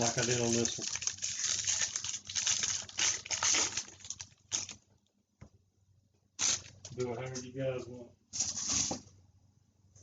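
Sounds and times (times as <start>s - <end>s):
card packs rustling and crinkling: 0.0s - 4.8s.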